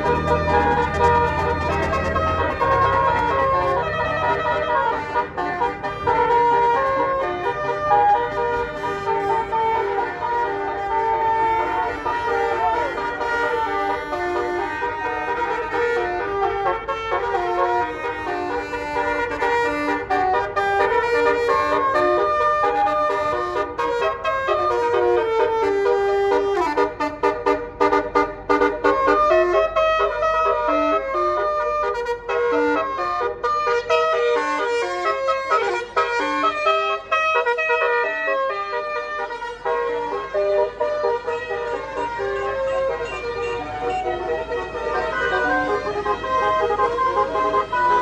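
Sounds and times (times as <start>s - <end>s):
air horn playing a melody: 0.0s - 48.0s.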